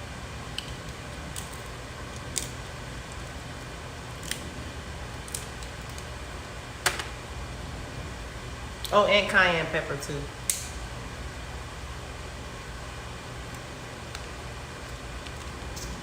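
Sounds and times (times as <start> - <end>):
low room hum: 0.0 - 16.0
crab shells cracking: 0.5 - 4.5, 5.1 - 6.2.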